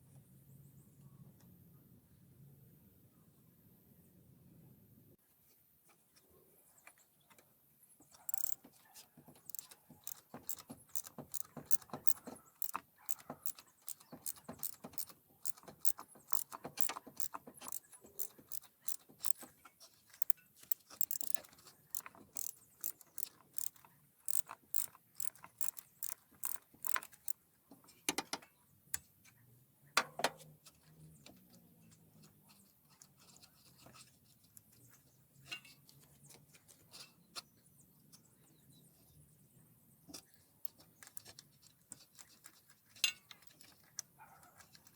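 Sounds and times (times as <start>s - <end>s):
metallic clicks of hand tools: 8.1s - 8.7s, 9.4s - 19.5s, 20.1s - 27.4s.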